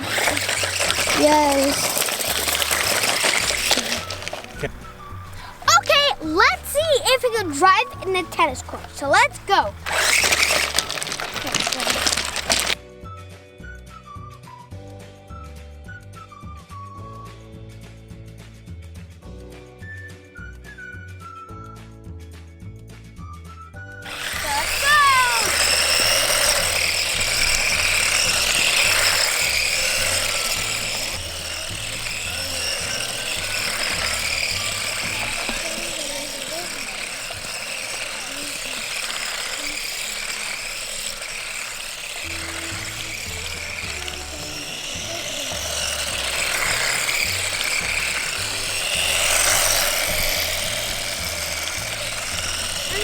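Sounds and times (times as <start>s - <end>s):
toy car motor whining: 0.0s - 12.8s, 23.8s - 53.0s.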